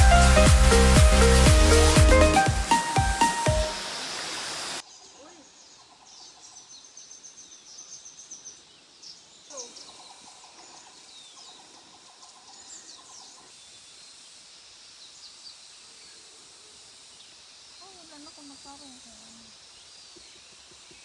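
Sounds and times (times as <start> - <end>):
music: 0.0 - 3.9.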